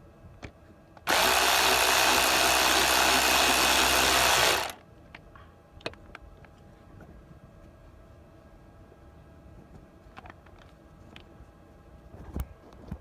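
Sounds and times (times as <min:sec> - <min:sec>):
handheld power tool running: 0:01.1 - 0:04.8.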